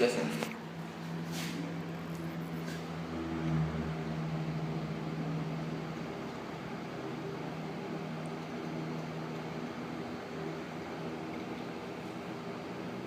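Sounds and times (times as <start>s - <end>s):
exhaust fan humming: 0.0s - 13.0s.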